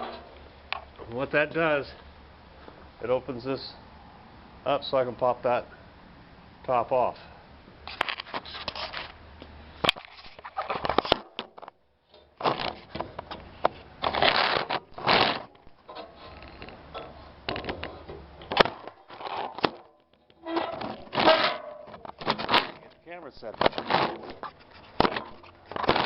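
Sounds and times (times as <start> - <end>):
rustling and scraping handling noise: 0.0 - 0.4, 7.8 - 26.0
sharp clicks and knocks: 9.4 - 26.0.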